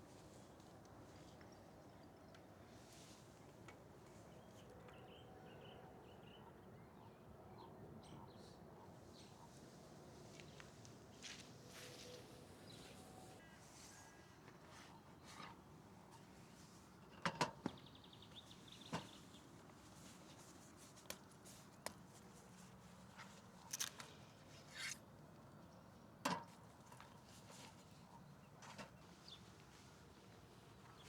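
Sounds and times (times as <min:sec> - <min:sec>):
camp cooking gear clicks and knocks: 0:23.2 - 0:24.2, 0:26.3 - 0:27.2.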